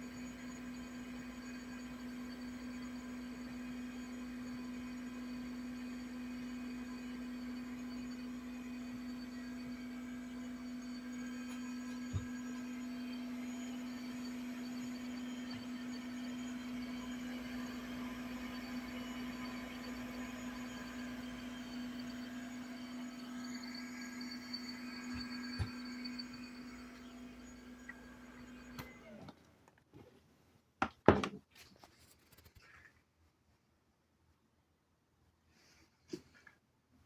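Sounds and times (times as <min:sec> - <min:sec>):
pump motor humming with whine: 0:00.0 - 0:29.4.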